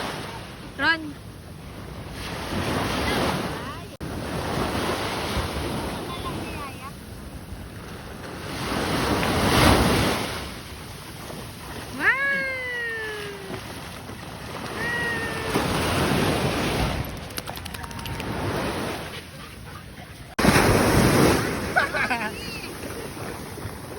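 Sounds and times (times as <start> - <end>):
surf washing on beach: 1.8 - 19.2, 20.3 - 23.9.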